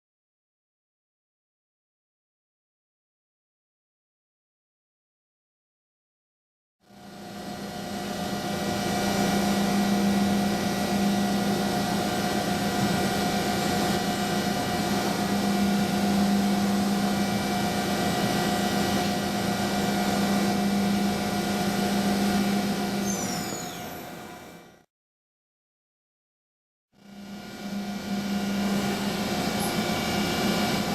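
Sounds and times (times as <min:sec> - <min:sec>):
milling machine humming and whining: 0:06.8 - 0:24.8, 0:27.0 - 0:30.9
high falling whistles: 0:23.0 - 0:24.2.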